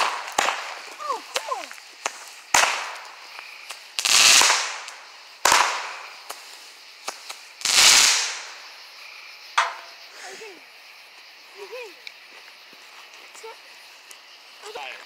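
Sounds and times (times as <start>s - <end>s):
firework sharp bangs: 0.0s - 8.8s
firework rushing burst: 2.1s - 3.1s, 3.9s - 6.5s, 7.2s - 8.8s.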